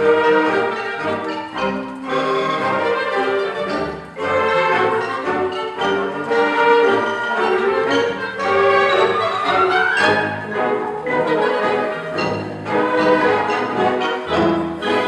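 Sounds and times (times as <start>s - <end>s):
orchestral music with brass: 0.0s - 15.0s.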